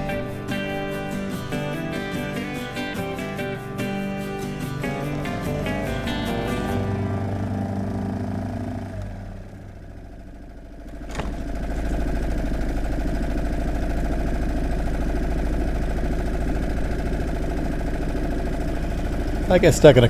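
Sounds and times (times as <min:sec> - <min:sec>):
music: 0:00.0 - 0:08.7
outboard motor idling: 0:00.0 - 0:20.0.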